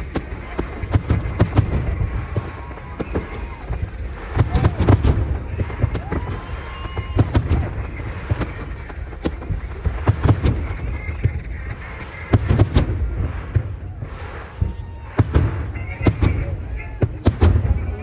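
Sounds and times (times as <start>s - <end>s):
continuous rumble: 0.0s - 18.0s
fireworks bursting: 0.0s - 18.0s.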